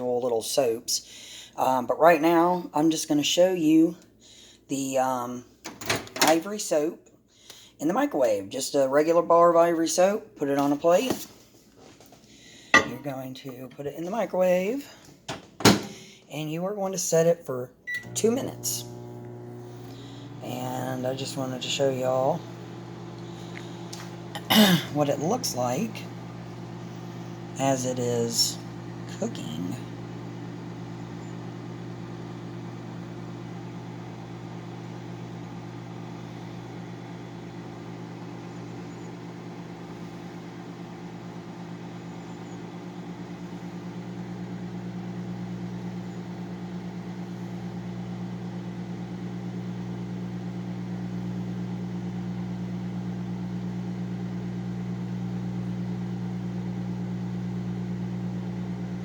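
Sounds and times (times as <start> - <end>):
microwave oven humming: 17.8 - 59.0.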